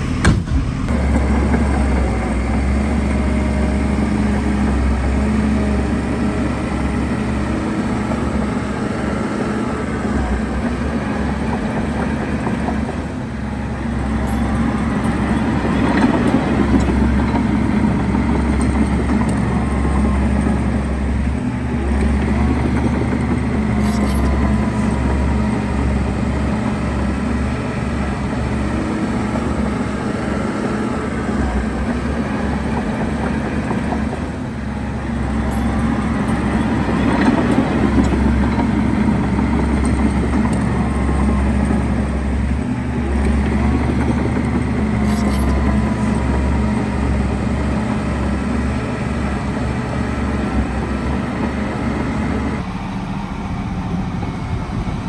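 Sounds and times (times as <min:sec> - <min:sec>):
heavy diesel engine under load: 0:00.0 - 0:55.0.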